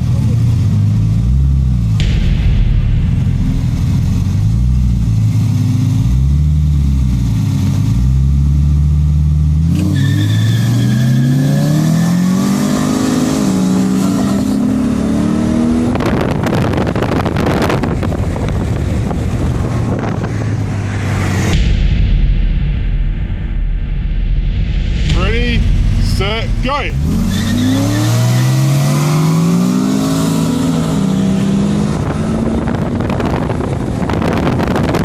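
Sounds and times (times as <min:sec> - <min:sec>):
rush of noise: 0:02.0 - 0:05.6, 0:21.5 - 0:27.2.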